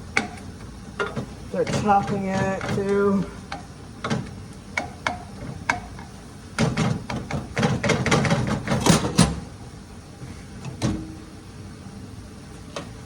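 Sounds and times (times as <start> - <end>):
utensil clacking and scraping pan: 0.2 - 9.2.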